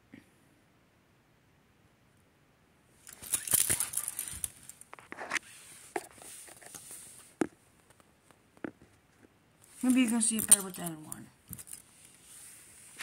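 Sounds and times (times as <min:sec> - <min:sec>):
rustling and scraping: 0:03.0 - 0:13.0.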